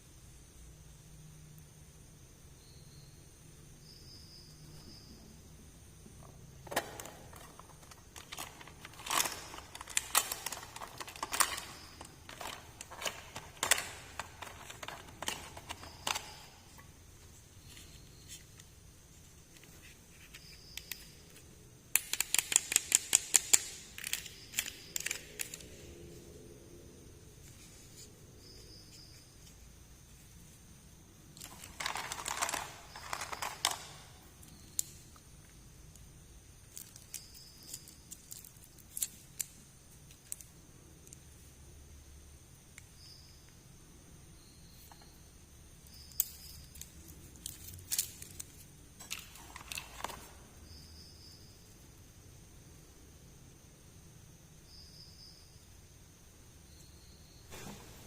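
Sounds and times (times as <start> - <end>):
packaging crinkling: 6.7 - 16.8, 31.4 - 34.1
toy pieces clicking and tapping: 7.1 - 16.6, 22.0 - 25.8, 31.4 - 35.2.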